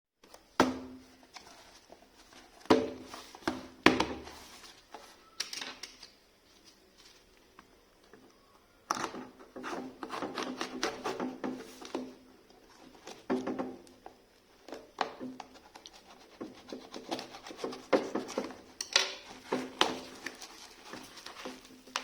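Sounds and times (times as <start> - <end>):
packaging rustling: 19.2 - 22.0.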